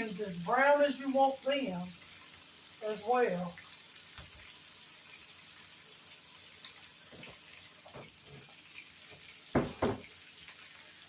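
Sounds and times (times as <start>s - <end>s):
kitchen tap running: 0.0s - 11.0s
sharp knocks: 9.5s - 10.0s.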